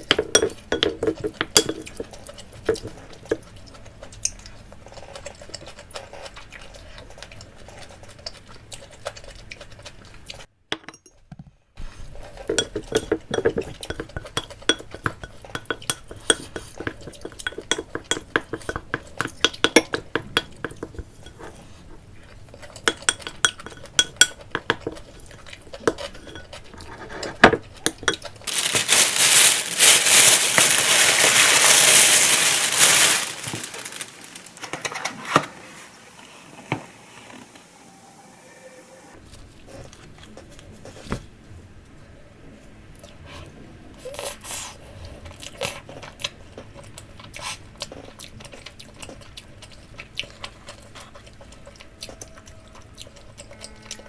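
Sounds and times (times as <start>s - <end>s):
spoon clinking against bowl: 0.0s - 2.1s, 12.5s - 21.5s, 22.8s - 28.3s
loud rustling hiss: 28.5s - 34.2s.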